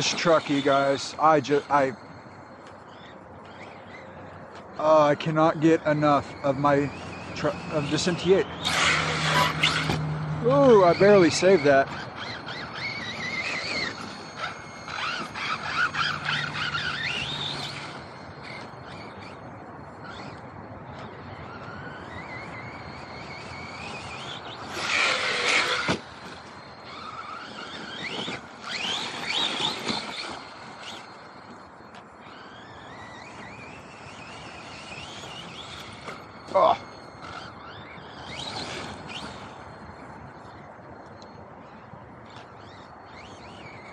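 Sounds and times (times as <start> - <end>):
electric motor whining: 0.0 - 43.9
rushing bursts of driving noise: 0.0 - 43.9.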